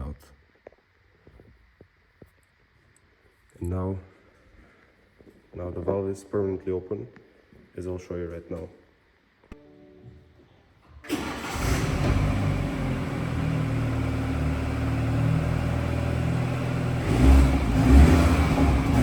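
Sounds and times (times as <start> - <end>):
car engine starting and revving: 11.1 - 19.0.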